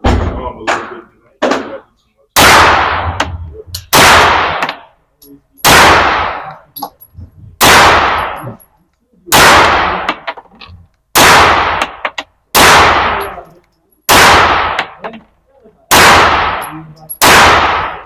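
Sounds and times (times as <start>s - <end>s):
gunshots with echoing decay: 0.0s - 5.0s, 5.6s - 8.7s, 9.3s - 10.5s, 11.1s - 15.1s, 15.9s - 18.0s
small metal clinks: 5.2s - 5.6s, 6.6s - 7.2s, 16.6s - 17.2s.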